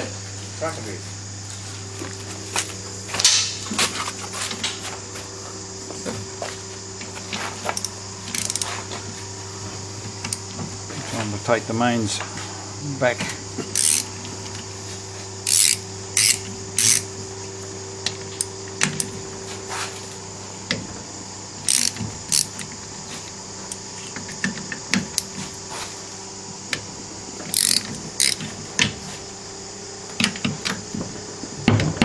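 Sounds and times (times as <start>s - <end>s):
ratchet wrench clicking: 7.8s - 8.7s, 13.7s - 14.1s, 15.4s - 17.1s, 21.7s - 22.7s, 27.5s - 28.4s.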